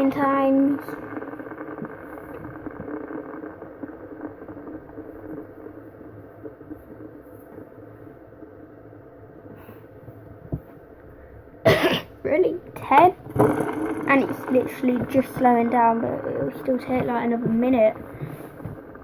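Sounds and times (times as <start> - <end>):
fidget spinners whirring: 0.0 - 7.4, 12.3 - 19.0.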